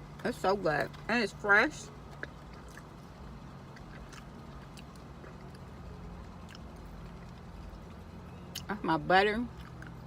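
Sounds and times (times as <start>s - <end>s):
low hum inside car: 0.0s - 10.0s
quiet chewing: 1.9s - 8.7s, 9.4s - 10.0s.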